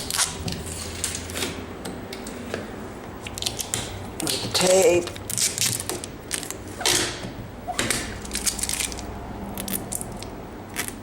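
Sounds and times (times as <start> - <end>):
plastic film crinkling: 3.3 - 6.7, 8.2 - 11.0.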